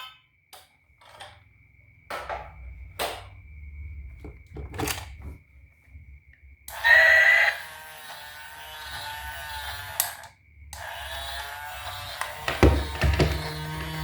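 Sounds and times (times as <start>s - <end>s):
toy vehicle motor buzzing: 6.7s - 14.0s.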